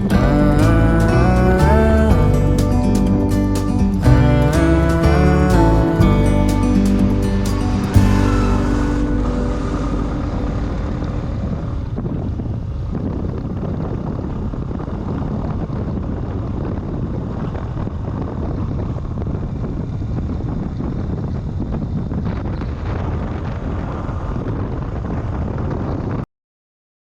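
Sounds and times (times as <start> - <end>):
steady low rumbling: 0.0 - 16.5
wind on microphone: 0.0 - 26.2.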